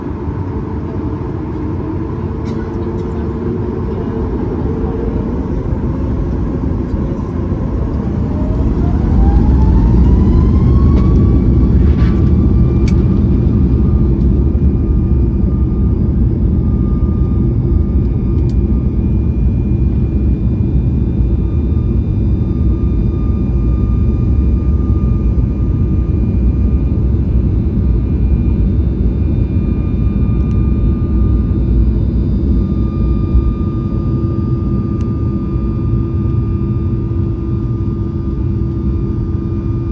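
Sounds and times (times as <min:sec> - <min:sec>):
jet engines spooling up: 0:00.1 - 0:19.2.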